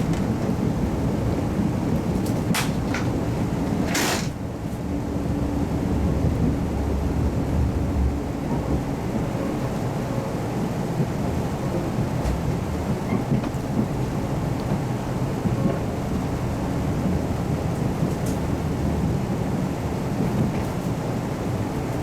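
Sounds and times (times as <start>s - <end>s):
railcar engine and wheels rumbling: 0.0s - 22.0s.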